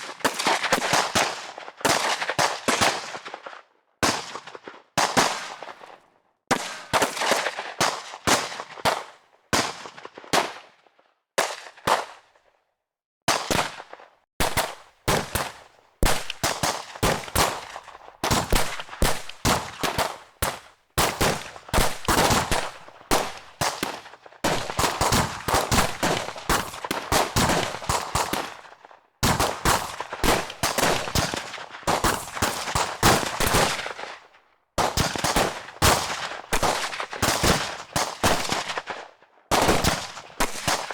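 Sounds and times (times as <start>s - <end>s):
automatic gunfire: 14.4s - 28.6s, 29.2s - 34.0s, 39.5s - 40.9s.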